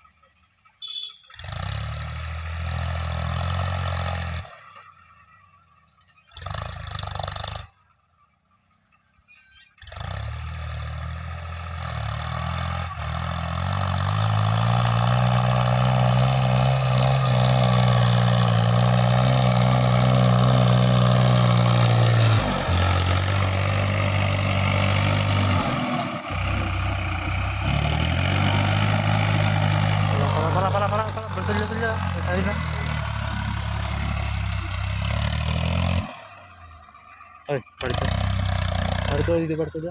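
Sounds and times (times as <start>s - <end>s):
diesel tractor engine running: 10.0s - 39.9s.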